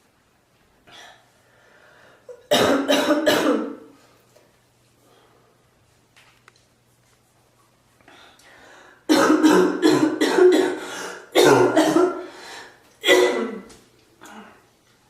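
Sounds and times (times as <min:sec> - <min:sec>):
person coughing: 0:02.3 - 0:03.9, 0:09.1 - 0:12.3, 0:13.0 - 0:14.6.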